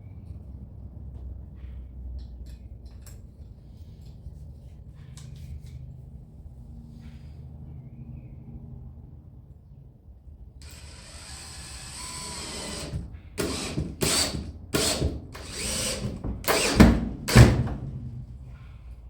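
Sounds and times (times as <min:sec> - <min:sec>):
power drill running: 0:10.6 - 0:18.2.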